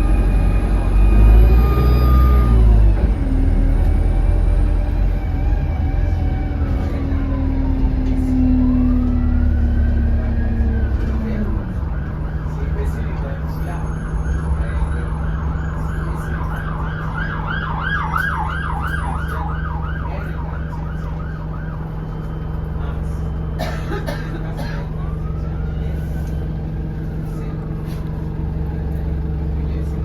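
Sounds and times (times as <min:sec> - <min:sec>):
bus engine drone: 0:00.0 - 0:30.0
emergency siren yelping: 0:04.4 - 0:23.2, 0:24.9 - 0:27.2.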